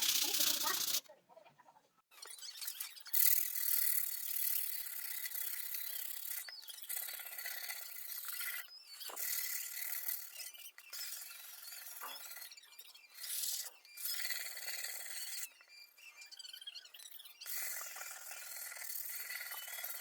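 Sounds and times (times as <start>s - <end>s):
scratchy sanding: 0.0s - 1.0s.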